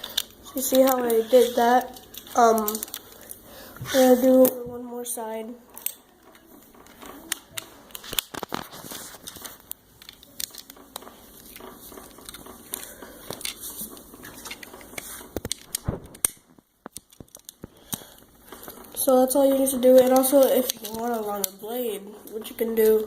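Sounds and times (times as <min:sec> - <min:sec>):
plastic bricks clicking: 0:00.0 - 0:03.3, 0:05.8 - 0:19.0.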